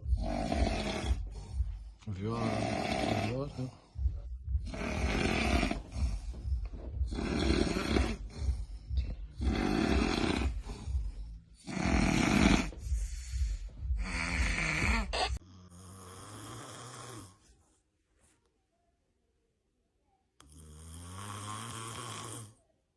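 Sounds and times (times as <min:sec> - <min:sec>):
person snoring loudly: 0:00.0 - 0:01.6, 0:02.2 - 0:03.8, 0:04.6 - 0:06.3, 0:07.0 - 0:17.4, 0:20.4 - 0:22.6.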